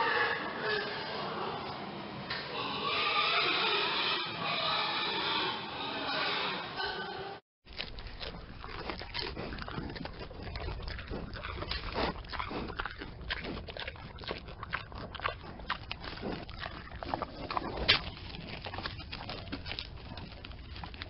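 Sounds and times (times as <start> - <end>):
pigs crunching and chewing: 7.7 - 21.0.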